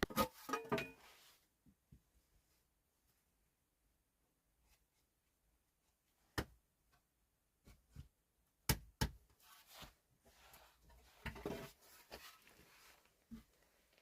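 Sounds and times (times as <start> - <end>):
rustling and scraping: 9.4 - 14.0.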